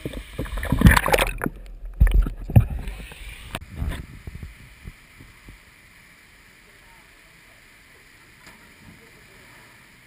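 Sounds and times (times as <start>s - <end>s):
water sloshing and splashing: 0.0s - 4.4s
low thumps: 0.0s - 5.6s.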